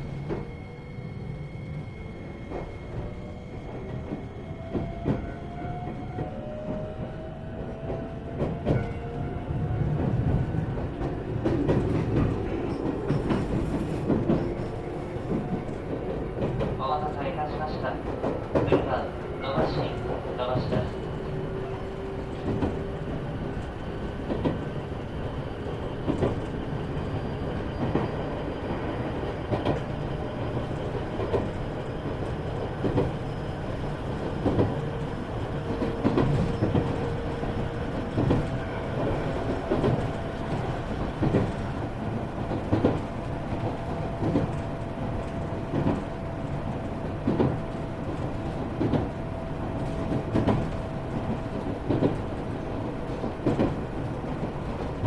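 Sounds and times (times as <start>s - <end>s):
train rumble: 0.0s - 55.0s.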